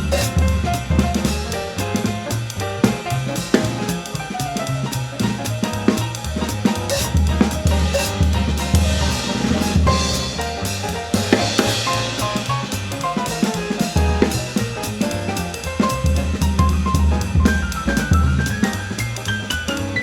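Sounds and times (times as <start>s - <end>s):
double bass line: 0.0s - 20.0s
drum kit: 0.0s - 20.0s
piano: 0.0s - 20.0s.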